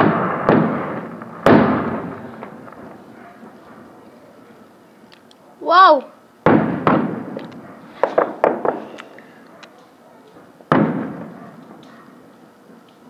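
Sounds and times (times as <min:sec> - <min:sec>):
fireworks crackling pops: 0:00.0 - 0:04.0, 0:06.4 - 0:13.0
fireworks bangs: 0:00.0 - 0:04.3, 0:06.4 - 0:09.0, 0:10.4 - 0:12.2.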